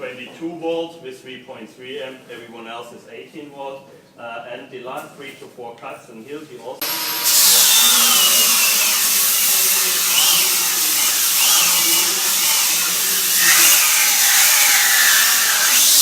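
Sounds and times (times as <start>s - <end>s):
angle grinder grinding: 6.8s - 16.0s.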